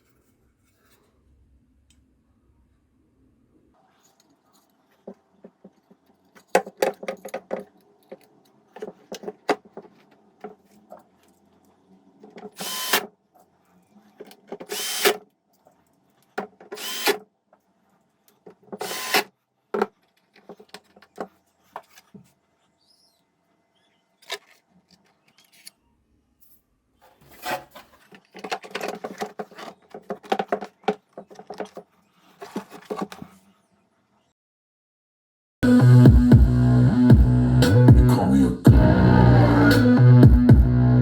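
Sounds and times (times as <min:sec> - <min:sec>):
clicks and knocks of parts handled: 0:04.1 - 0:13.1, 0:14.0 - 0:22.3, 0:24.2 - 0:25.8, 0:27.1 - 0:33.3
power tool bursts: 0:12.4 - 0:13.1, 0:14.6 - 0:15.2, 0:16.7 - 0:17.2, 0:18.8 - 0:19.3.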